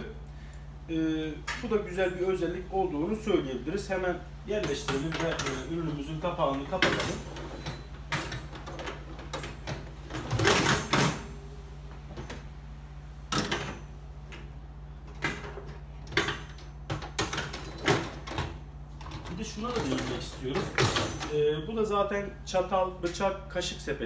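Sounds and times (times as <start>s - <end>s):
metal and plastic clattering: 4.6s - 11.3s, 15.1s - 21.4s.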